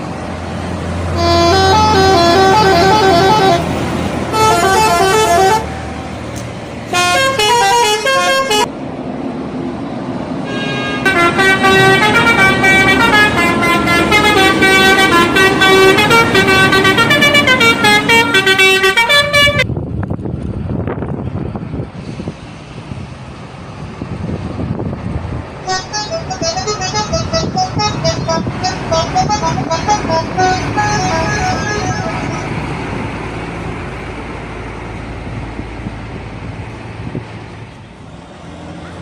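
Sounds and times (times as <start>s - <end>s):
bus engine running: 0.0s - 39.0s
bus air horns playing melodies: 1.0s - 6.1s, 6.9s - 8.7s, 10.4s - 19.7s, 25.6s - 33.0s.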